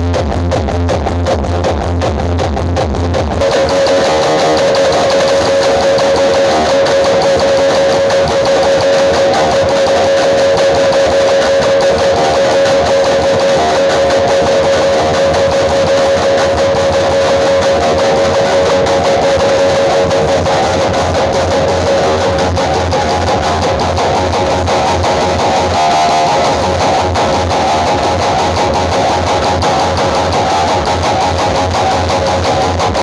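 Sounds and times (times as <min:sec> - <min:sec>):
loud guitar-led music: 0:00.0 - 0:33.0
steady high note: 0:03.4 - 0:28.8.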